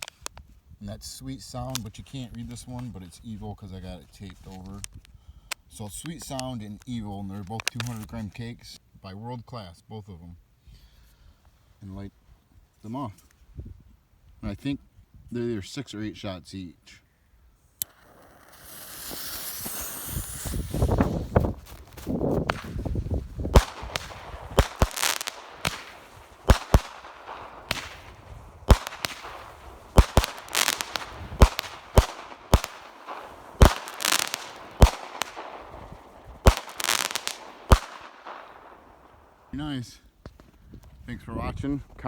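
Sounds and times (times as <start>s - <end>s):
firework hiss: 17.8s - 21.8s, 22.4s - 39.5s
sharp cracks of aerial bursts: 17.8s - 39.6s
deep thumps of firework shots: 19.1s - 39.6s.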